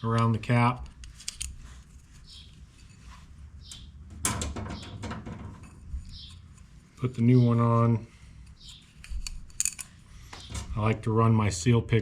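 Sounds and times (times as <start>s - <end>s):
rubber ring scraping and squeaking: 1.8s - 4.0s, 5.6s - 7.4s, 8.5s - 9.5s.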